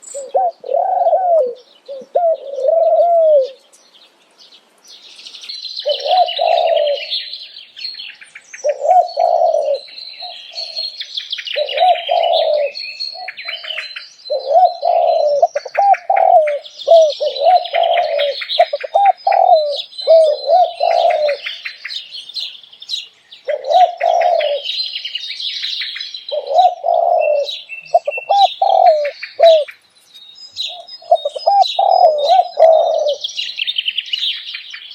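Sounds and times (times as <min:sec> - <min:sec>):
doves cooing: 0:00.0 - 0:03.6, 0:05.8 - 0:07.3, 0:08.6 - 0:21.8, 0:23.4 - 0:24.8, 0:26.3 - 0:29.7, 0:30.7 - 0:33.4
small birds chirping: 0:00.0 - 0:34.9.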